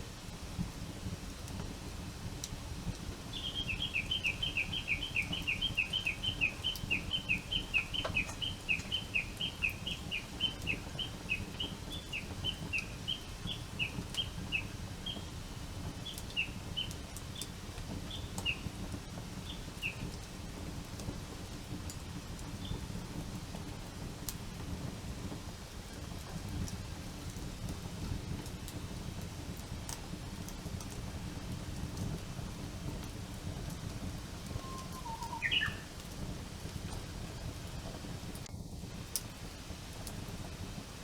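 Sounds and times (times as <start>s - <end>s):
bird chirping: 3.3s - 15.2s, 34.5s - 35.9s.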